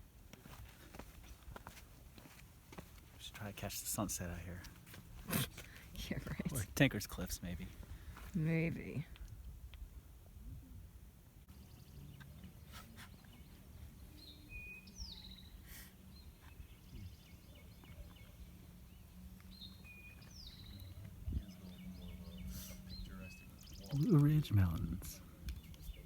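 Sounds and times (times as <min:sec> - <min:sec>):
songbird singing: 0:11.4 - 0:26.0.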